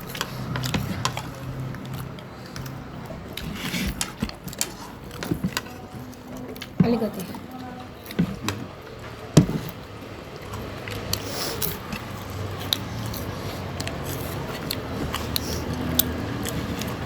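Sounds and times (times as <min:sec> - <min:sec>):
dishes and utensils clicking: 0:00.0 - 0:17.0.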